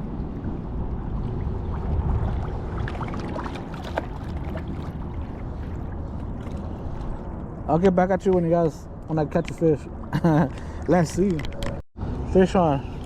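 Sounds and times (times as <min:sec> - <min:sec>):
water sloshing against hull: 0:00.0 - 0:07.7
low rumble: 0:00.0 - 0:07.8
small splashes and clicks: 0:02.8 - 0:05.0.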